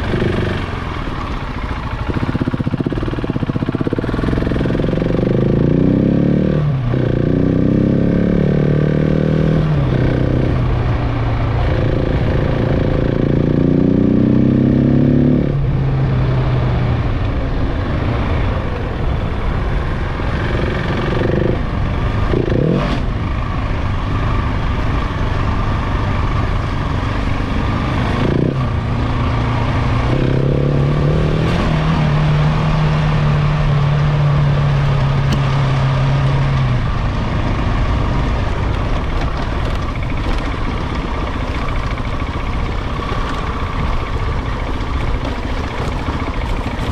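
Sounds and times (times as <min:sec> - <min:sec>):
motorcycle engine revving: 0:00.0 - 0:46.9
rough rushing and clattering: 0:38.5 - 0:46.9.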